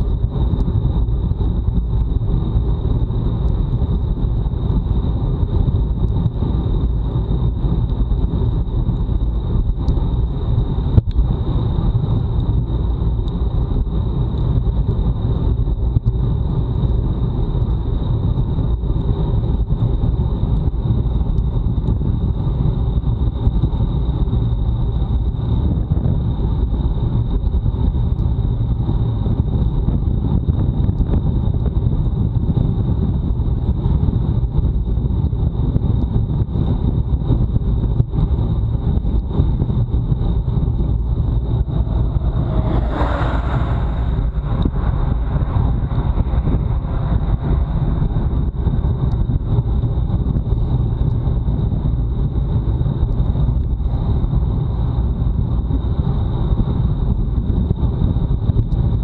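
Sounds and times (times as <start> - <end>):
wind rushing over microphone: 0.0 - 59.0
thin high whine: 39.8 - 49.6.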